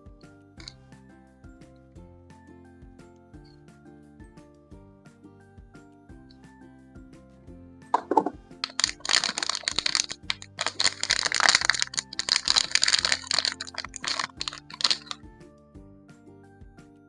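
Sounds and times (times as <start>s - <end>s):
soft background music: 0.0s - 17.0s
plastic packaging crinkling: 8.0s - 15.2s.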